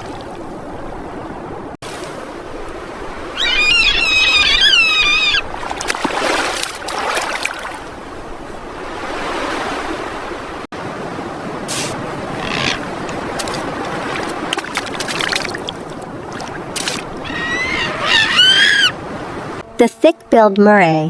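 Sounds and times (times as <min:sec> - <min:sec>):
sea waves washing: 0:00.0 - 0:19.6
high wavering animal call: 0:03.3 - 0:05.5, 0:12.3 - 0:12.9, 0:17.2 - 0:19.0.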